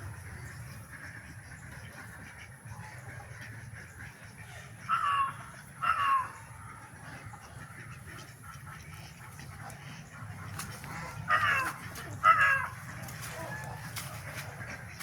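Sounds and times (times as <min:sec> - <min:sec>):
steady background noise: 0:00.0 - 0:15.0
chicken squawks: 0:04.4 - 0:08.8, 0:10.4 - 0:15.0.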